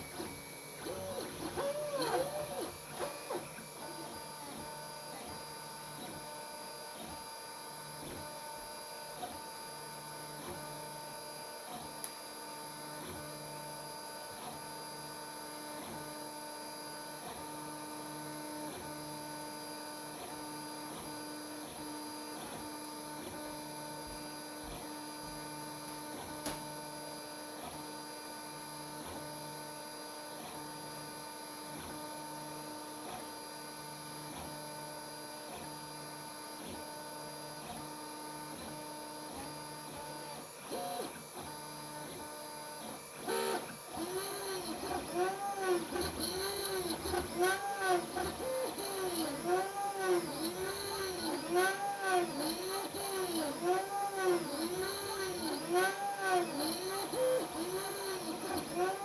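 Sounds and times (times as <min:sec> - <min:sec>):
three d printer motors whining: 0:00.0 - 0:59.0.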